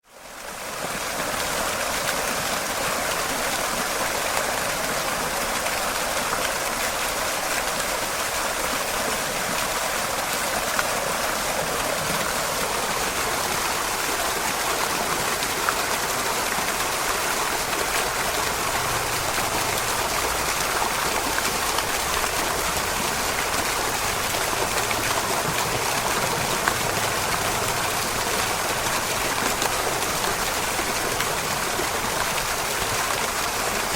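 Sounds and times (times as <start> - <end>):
fountain water splashing: 0.0 - 33.9.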